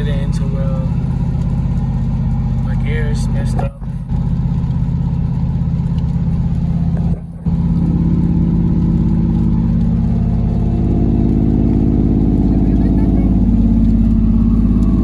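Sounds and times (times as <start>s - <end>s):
truck engine running: 0.0s - 15.0s.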